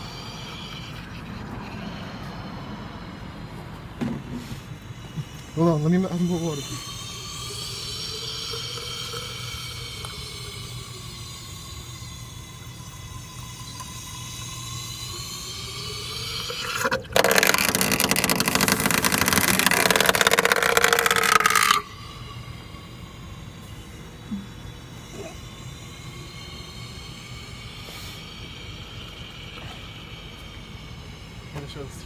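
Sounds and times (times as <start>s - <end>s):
car engine idling with whine: 0.0s - 32.0s
water boiling hissing crackle: 6.8s - 22.5s.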